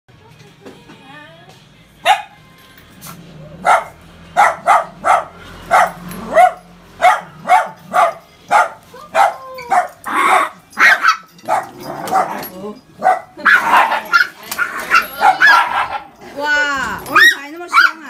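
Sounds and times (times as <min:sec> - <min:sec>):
dog barking: 0:02.0 - 0:02.4, 0:03.6 - 0:16.1, 0:17.1 - 0:18.0.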